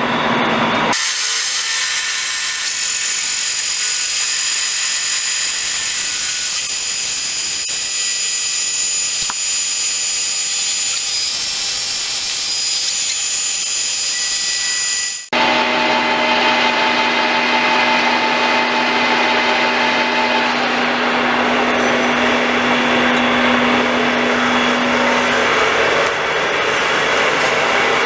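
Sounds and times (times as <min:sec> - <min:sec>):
metal lathe whining: 0:00.8 - 0:16.8.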